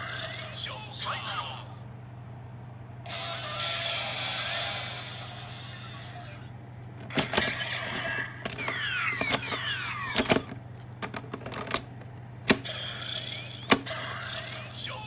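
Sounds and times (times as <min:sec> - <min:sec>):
plastic toy belt clicks: 0:07.0 - 0:12.7, 0:13.5 - 0:14.0.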